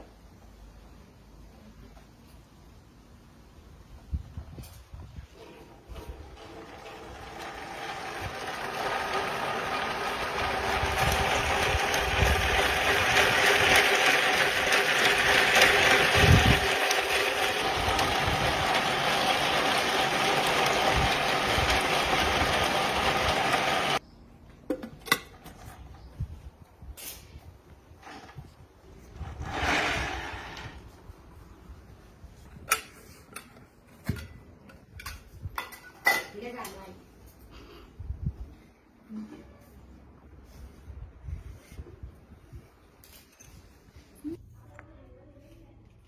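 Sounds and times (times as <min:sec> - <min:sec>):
small electric motor whining: 0:06.4 - 0:24.0.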